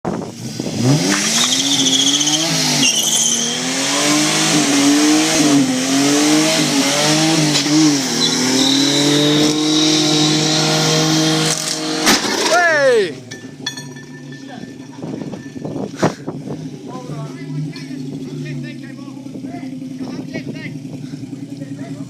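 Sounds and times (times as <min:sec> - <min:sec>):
car engine revving hard: 0:00.2 - 0:12.6
tyre squeal: 0:01.2 - 0:03.9, 0:07.5 - 0:11.0.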